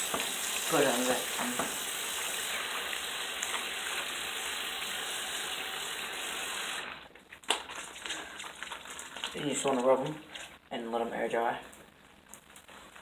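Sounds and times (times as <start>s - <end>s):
water running from sink tap: 0.0s - 10.2s.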